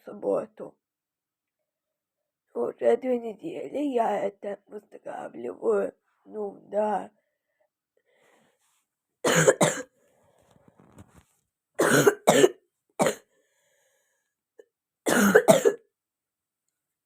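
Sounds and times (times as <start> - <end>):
girl coughing: 9.2 - 9.9, 11.8 - 13.3, 15.1 - 15.9.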